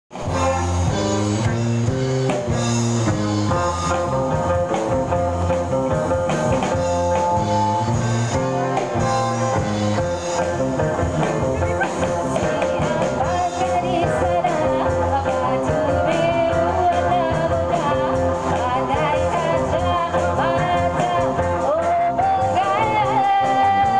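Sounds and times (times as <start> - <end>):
bass line: 0.1 - 23.9
electric guitar: 0.1 - 23.9
live rock band playing: 0.1 - 23.9
wavering lead line: 0.2 - 23.4.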